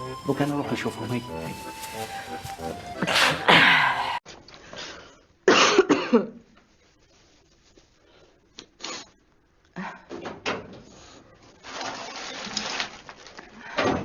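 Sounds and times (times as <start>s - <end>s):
short sharp breaths: 1.2s - 4.2s
person sneezing: 2.8s - 4.2s.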